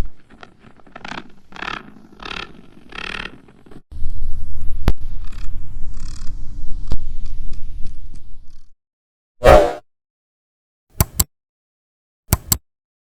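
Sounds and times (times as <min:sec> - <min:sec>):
sharp click: 0:11.0 - 0:11.3, 0:12.3 - 0:12.6.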